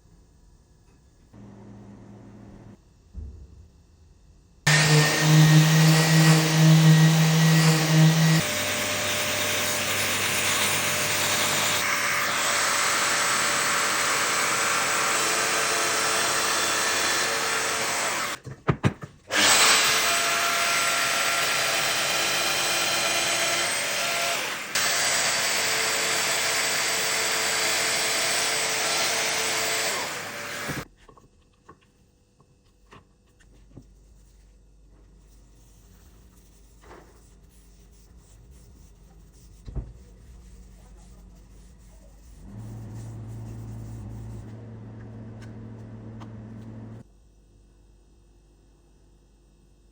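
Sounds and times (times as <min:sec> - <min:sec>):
woodworking power tool running: 0:04.7 - 0:18.4, 0:19.3 - 0:30.8, 0:42.4 - 0:47.0.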